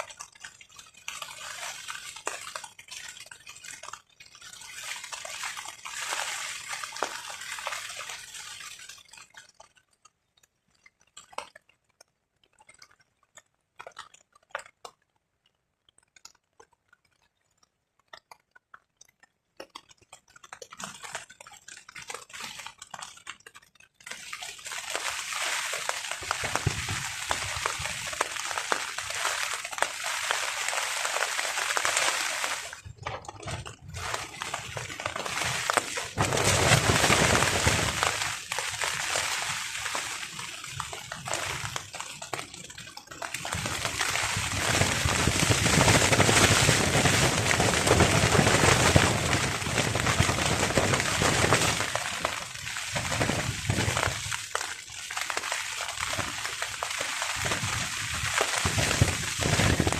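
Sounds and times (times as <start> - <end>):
rain on a tarp: 0.0 - 59.9.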